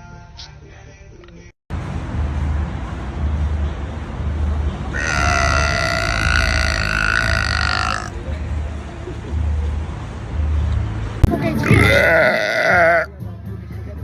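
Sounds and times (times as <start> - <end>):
long loud burp: 5.0 - 8.1, 11.6 - 13.1.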